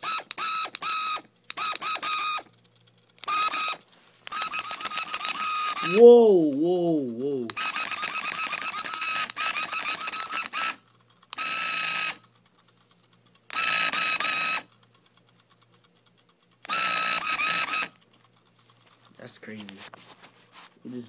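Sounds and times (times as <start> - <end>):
toy car electric motor whining: 0.0 - 6.1, 7.4 - 14.8, 16.6 - 18.4.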